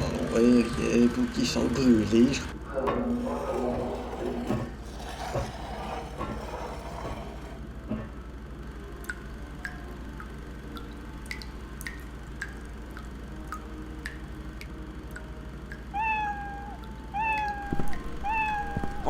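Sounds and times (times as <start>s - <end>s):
water dripping: 10.8s - 14.2s
cat meowing: 15.9s - 19.0s.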